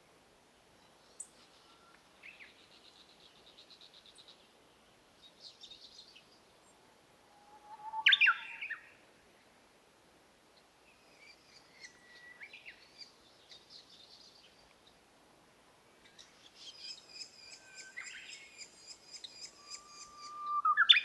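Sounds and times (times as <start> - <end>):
birds singing: 16.1 - 21.0.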